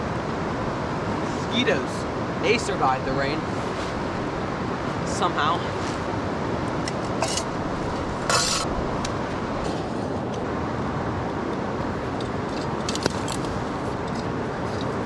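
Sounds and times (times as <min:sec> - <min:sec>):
rustle: 0:03.4 - 0:04.2, 0:04.9 - 0:10.2.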